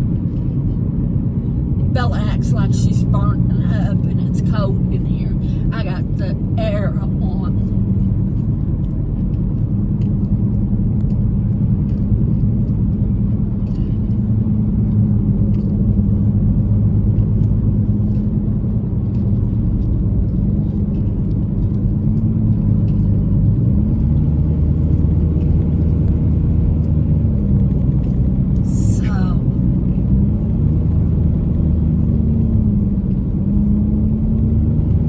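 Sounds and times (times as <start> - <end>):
road rumble: 0.0 - 35.0.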